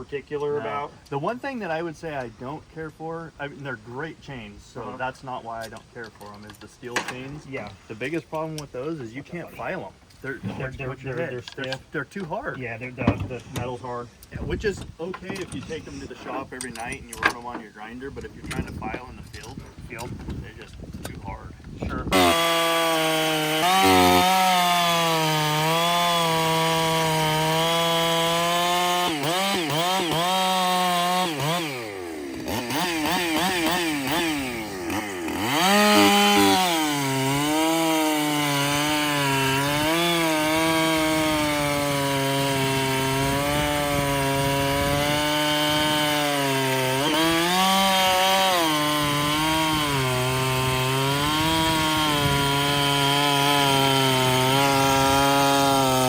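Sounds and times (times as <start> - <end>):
chainsaw cutting wood: 10.3 - 20.4, 22.0 - 56.0.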